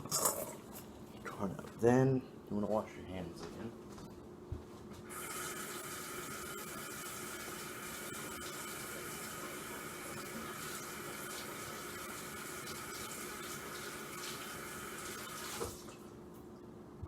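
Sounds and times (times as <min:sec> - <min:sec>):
water running from sink tap: 0:05.1 - 0:16.0.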